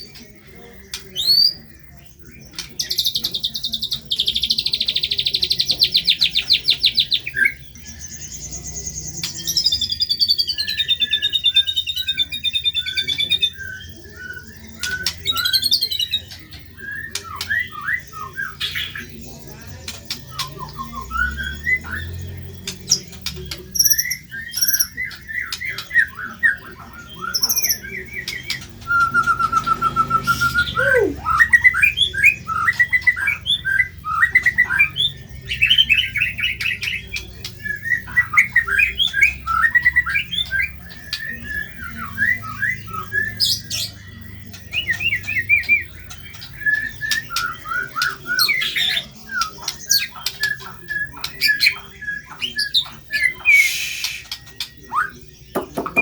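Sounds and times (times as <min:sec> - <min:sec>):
songbird singing varied song: 0:00.0 - 0:56.0.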